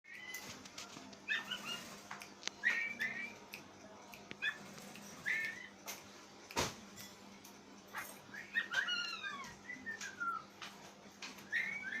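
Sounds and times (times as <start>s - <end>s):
bird whistled calls: 11.4s - 12.0s.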